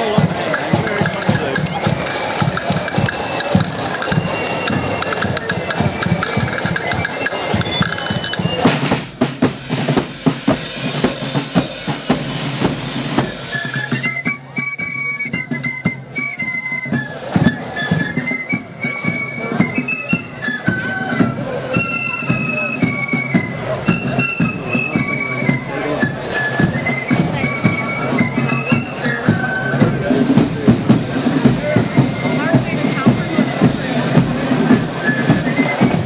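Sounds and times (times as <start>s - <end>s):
flutes playing melody: 0.0s - 36.0s
snare drums: 0.0s - 36.0s
bass drum beating: 8.7s - 13.6s.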